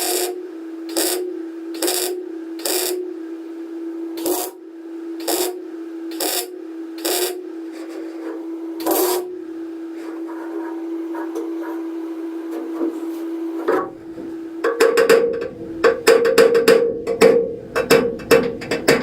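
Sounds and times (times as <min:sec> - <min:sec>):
mig welder bursts: 0:00.0 - 0:03.1, 0:04.2 - 0:04.6, 0:05.2 - 0:07.4, 0:08.8 - 0:09.3
steady welder hum: 0:00.0 - 0:19.0.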